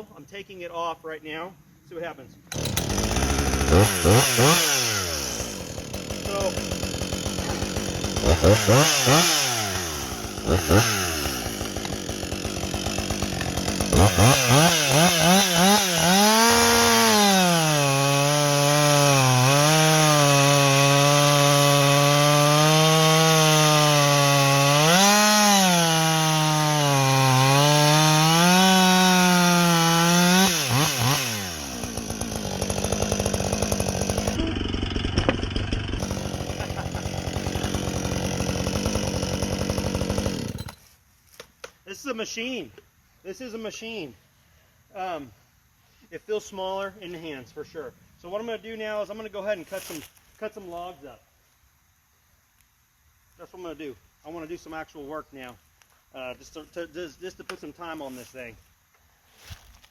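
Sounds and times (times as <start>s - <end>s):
chainsaw revving: 2.5s - 40.8s.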